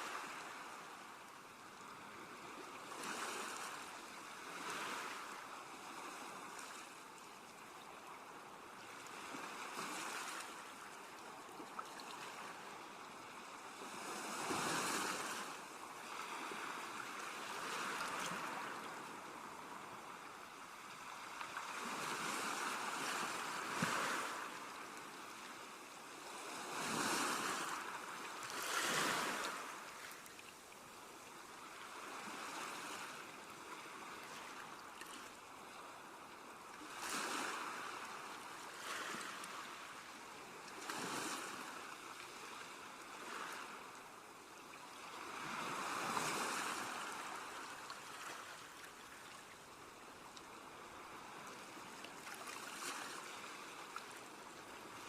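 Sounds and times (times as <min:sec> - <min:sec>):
sea waves breaking on shore: 0:00.0 - 0:55.0
surf hiss: 0:00.0 - 0:55.0.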